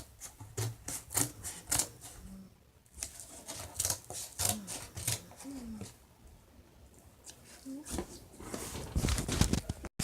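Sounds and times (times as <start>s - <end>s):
cardboard crinkling and scraping: 2.9s - 6.0s, 7.6s - 10.0s.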